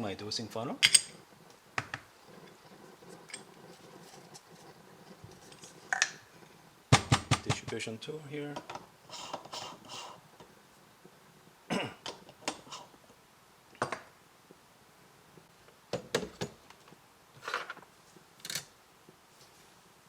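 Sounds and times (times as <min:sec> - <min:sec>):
metal tools clinking and scraping: 0:00.8 - 0:01.2, 0:02.4 - 0:03.7.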